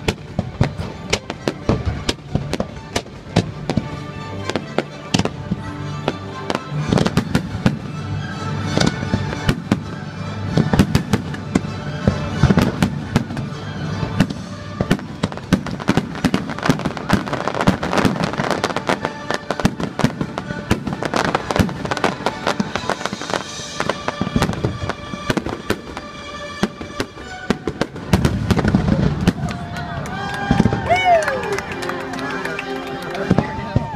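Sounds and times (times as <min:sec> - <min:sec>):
fireworks bangs and crackles: 0:00.0 - 0:31.3, 0:33.2 - 0:33.9
music playing: 0:00.0 - 0:33.9.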